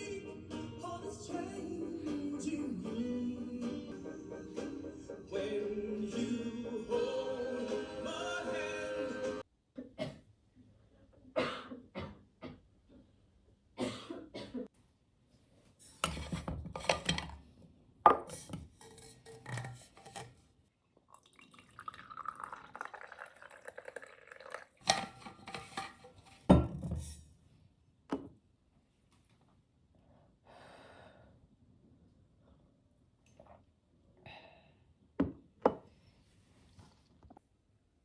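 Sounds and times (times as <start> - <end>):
kitchenware clinking: 15.8 - 17.4, 18.1 - 20.4, 22.2 - 27.2.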